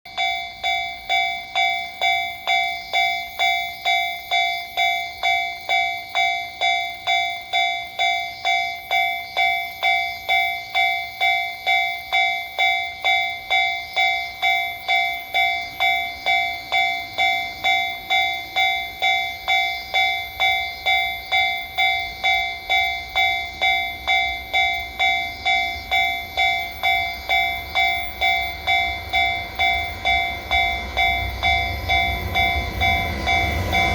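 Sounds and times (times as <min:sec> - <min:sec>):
level-crossing warning bell: 0:00.1 - 0:33.9
freight train rumble: 0:15.2 - 0:33.9.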